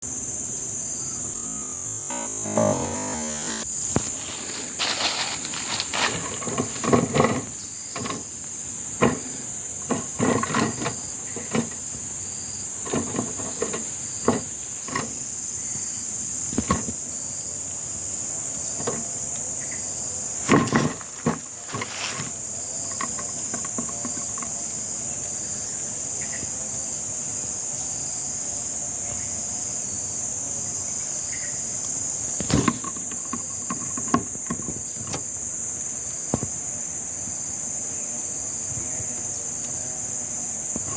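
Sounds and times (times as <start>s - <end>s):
high-pitched insect chorus: 0.0s - 40.9s
sharp clicks and knocks: 32.4s - 35.4s.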